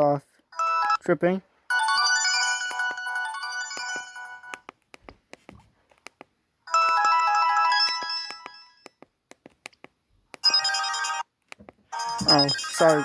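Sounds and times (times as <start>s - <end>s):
electronic ringtone tune: 0.6s - 1.0s, 1.7s - 4.6s, 6.7s - 8.9s, 10.4s - 11.2s, 11.9s - 13.0s.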